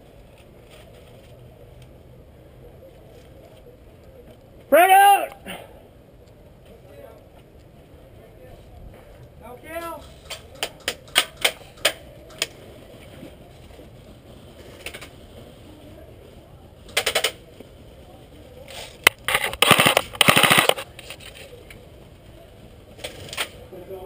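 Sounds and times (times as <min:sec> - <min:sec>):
airsoft rifle shots: 0:19.1 - 0:20.8.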